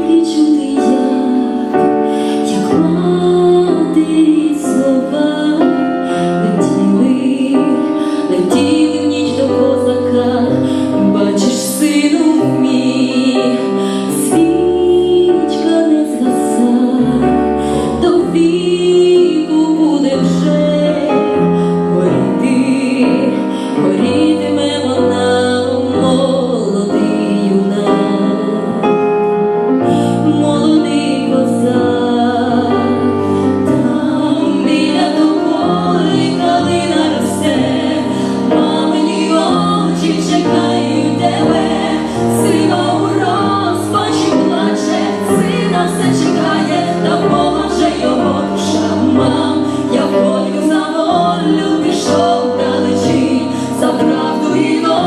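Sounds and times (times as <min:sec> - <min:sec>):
two women singing: 0:00.0 - 0:55.0.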